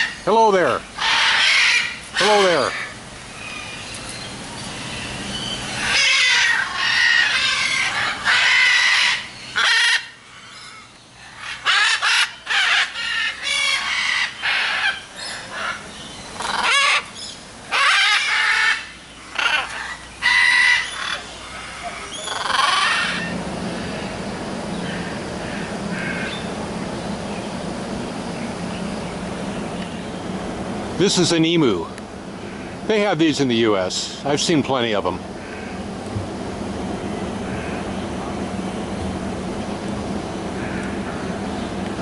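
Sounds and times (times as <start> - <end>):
parrots screeching: 0.0 - 3.8, 5.3 - 23.3, 24.9 - 26.4.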